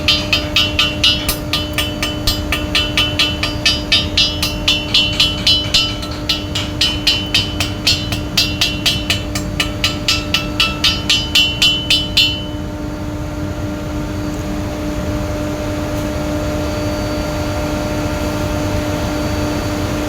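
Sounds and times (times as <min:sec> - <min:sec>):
hammer tapping on metal: 0:00.0 - 0:12.7
steady low hum: 0:00.0 - 0:15.0.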